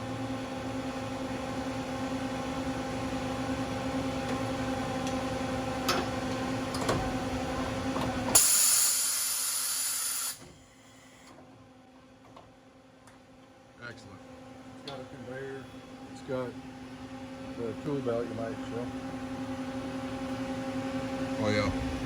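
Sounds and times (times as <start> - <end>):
loud air hiss: 8.4 - 10.4.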